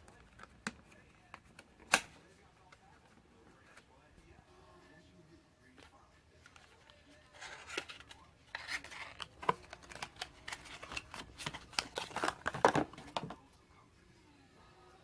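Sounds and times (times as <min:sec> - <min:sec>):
packaging scraping and rustling: 0:06.5 - 0:13.4.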